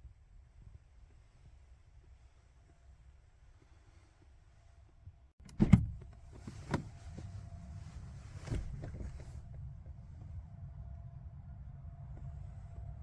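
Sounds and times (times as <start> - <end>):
rustling or whirring noise: 6.3 - 10.5.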